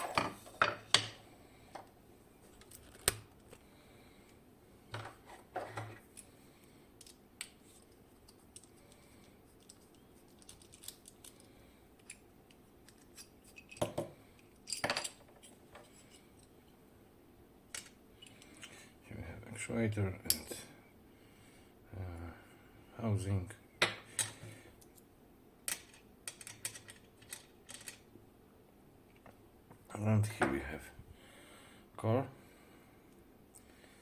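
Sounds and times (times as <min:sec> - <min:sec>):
lock cylinder and tools clicking: 0:25.7 - 0:28.0.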